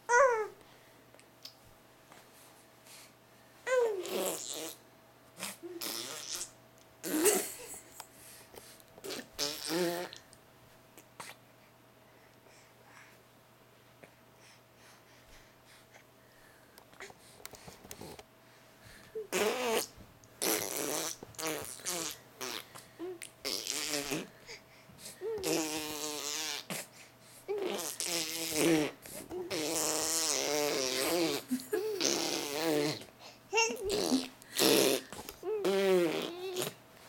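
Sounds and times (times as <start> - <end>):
baby blowing raspberries: 19.2 - 24.4, 25.0 - 36.8.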